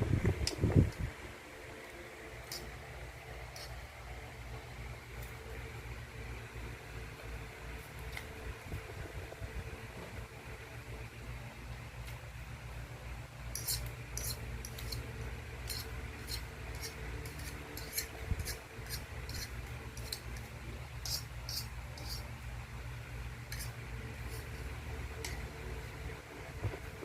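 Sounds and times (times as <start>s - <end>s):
low hum: 0.0s - 27.0s
light clicks and scrapes: 2.4s - 2.8s, 3.5s - 3.9s, 13.5s - 22.3s, 23.5s - 25.4s.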